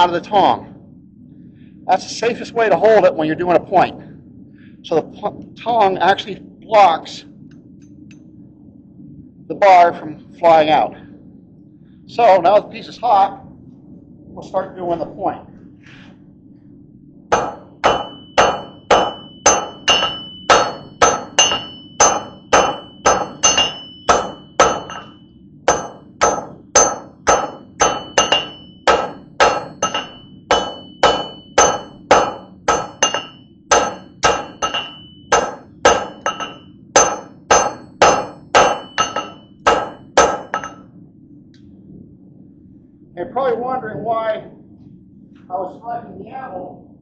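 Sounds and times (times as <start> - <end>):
hammer rebounding on bare anvil: 17.3 - 40.8
hammer striking steel on anvil: 17.3 - 40.8.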